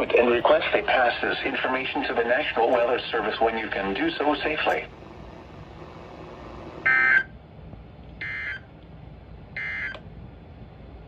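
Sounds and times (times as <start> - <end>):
faint broadcast hiss: 0.0 - 6.9.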